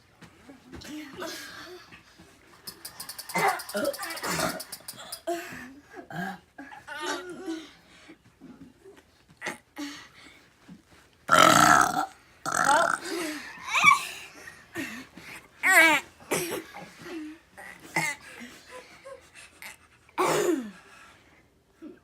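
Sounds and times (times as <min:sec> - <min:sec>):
children's vocal noises: 0:02.7 - 0:05.8
children burping: 0:02.8 - 0:07.5, 0:11.3 - 0:14.1, 0:20.2 - 0:20.8.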